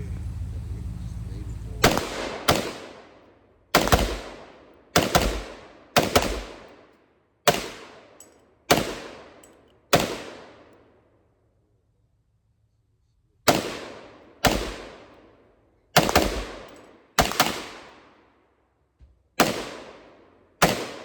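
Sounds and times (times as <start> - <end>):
gunshots with ringing echo: 0.2 - 6.9, 7.5 - 10.8, 13.5 - 15.3, 16.0 - 18.2, 19.4 - 21.0.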